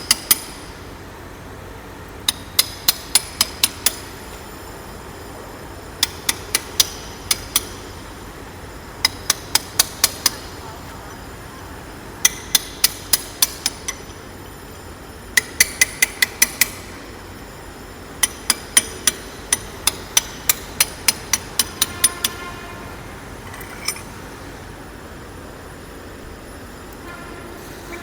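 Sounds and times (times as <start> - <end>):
hammer striking chisel on steel: 0.0 - 0.7, 2.3 - 4.1, 6.0 - 7.9, 9.0 - 10.5, 12.2 - 14.0, 18.2 - 24.1
metal ringing: 18.2 - 24.5.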